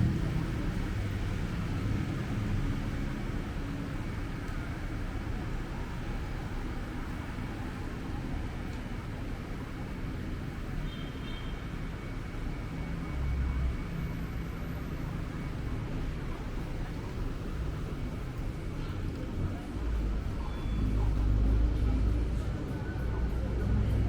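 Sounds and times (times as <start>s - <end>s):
rumble of passing vehicles: 0.0s - 24.0s.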